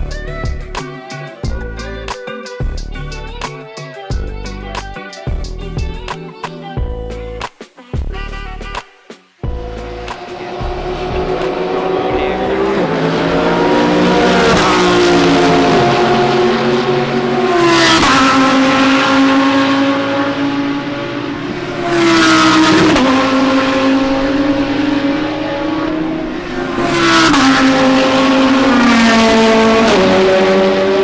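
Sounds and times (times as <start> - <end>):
race cars passing at high revs: 9.6 - 31.0.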